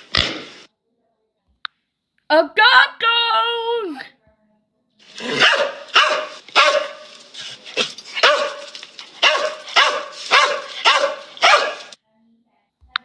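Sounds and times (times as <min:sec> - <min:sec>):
dog barking: 0:05.0 - 0:12.0.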